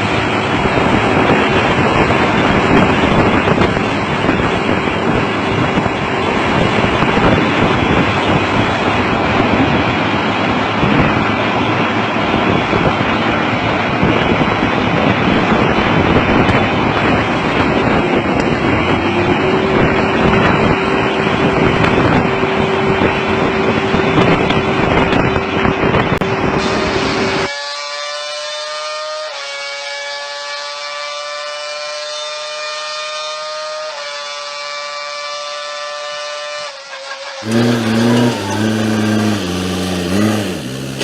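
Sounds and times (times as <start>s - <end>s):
heavy machinery running: 37.4s - 41.0s
machine whine: 37.4s - 41.0s.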